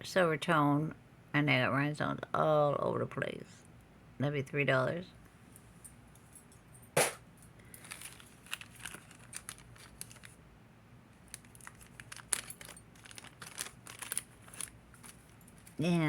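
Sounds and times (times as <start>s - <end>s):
sharp short sound: 7.0s - 7.2s
plastic bag rustling: 7.7s - 10.4s, 11.2s - 16.0s
earrings clinking: 11.3s - 15.8s.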